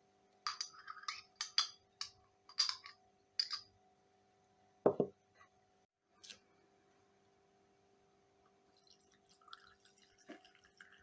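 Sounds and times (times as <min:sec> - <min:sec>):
metal spoon clinking on glass: 0:00.5 - 0:03.7.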